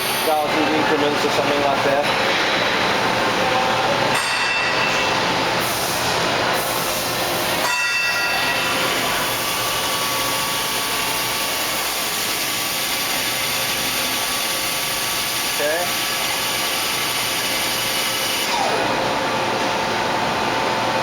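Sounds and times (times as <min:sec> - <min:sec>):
machine spindle whining: 0:08.4 - 0:20.4.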